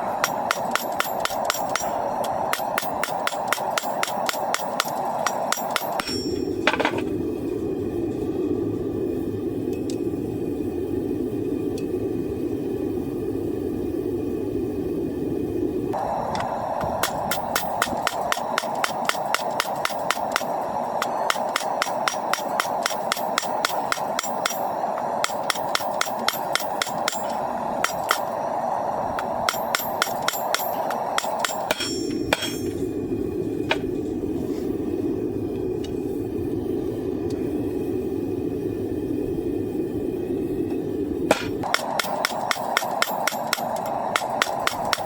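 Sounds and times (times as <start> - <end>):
steady rushing noise: 0.0 - 45.0
hammer ringing on anvil: 0.2 - 6.6, 21.3 - 28.3, 29.4 - 32.8.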